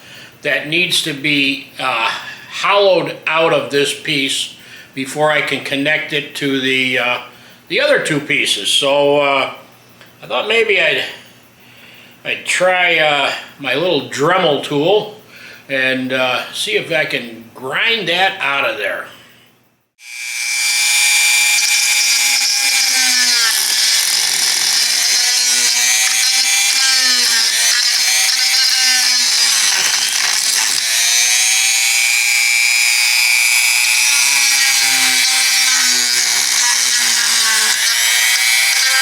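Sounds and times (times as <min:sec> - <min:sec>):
rotary tool grinding bone: 0:20.0 - 0:39.0.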